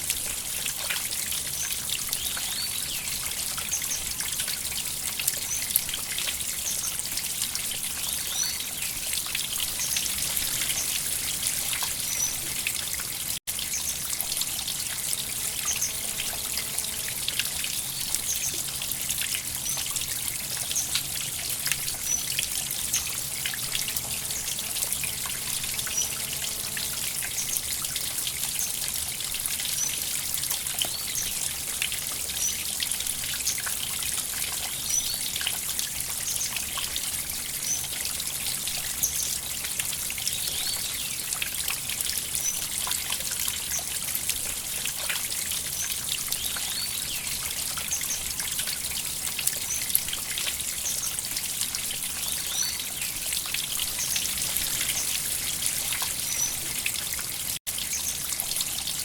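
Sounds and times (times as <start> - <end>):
small water splashes: 0.0 - 59.0
river water flowing: 7.1 - 29.9, 50.3 - 59.0.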